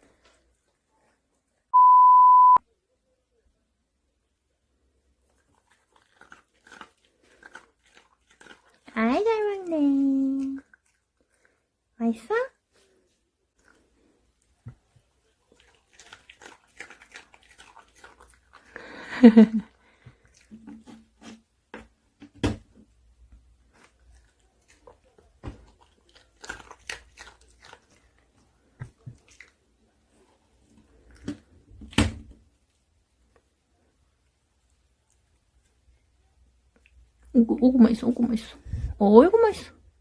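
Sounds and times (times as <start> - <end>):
dog crunching hard treat: 5.4 - 9.0, 15.5 - 18.8, 23.8 - 29.6.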